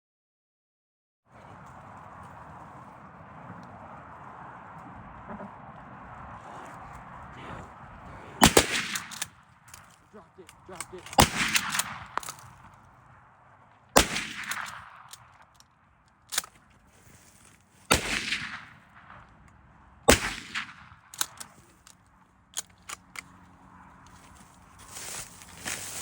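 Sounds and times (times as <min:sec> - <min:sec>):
gunshots with rolling echo: 0:08.2 - 0:15.5, 0:17.9 - 0:19.3, 0:20.0 - 0:21.5.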